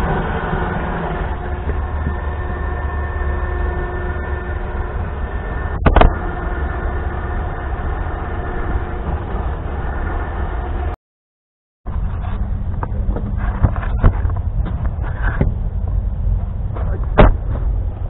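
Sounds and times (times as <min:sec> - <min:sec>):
motor running steadily: 0:00.0 - 0:11.0.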